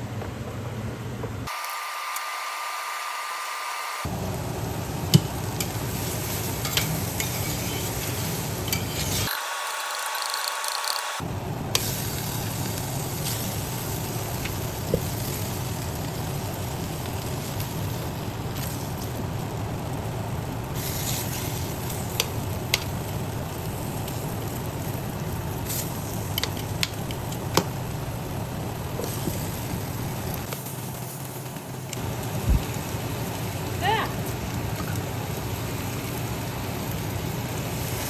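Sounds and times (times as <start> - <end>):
food sizzling in a frying pan: 1.6 - 10.0, 11.2 - 38.0.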